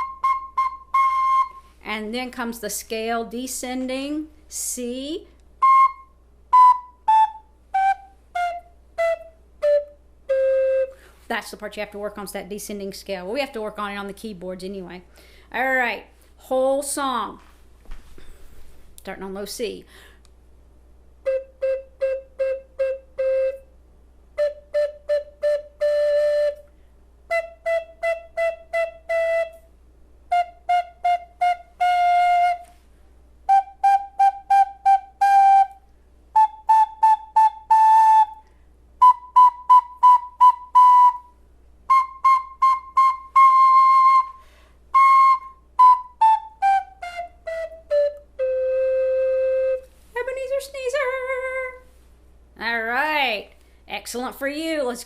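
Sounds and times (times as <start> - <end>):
flutophone playing scale: 0.0 - 1.8, 5.6 - 11.1, 21.2 - 23.7, 24.4 - 26.7, 27.3 - 29.7, 30.3 - 32.8, 33.4 - 50.3.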